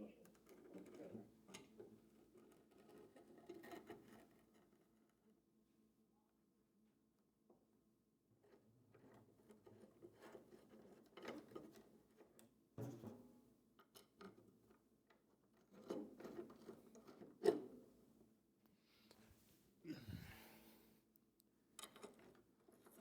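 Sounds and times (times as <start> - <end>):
small metal parts clicking and tapping: 21.8 - 23.0.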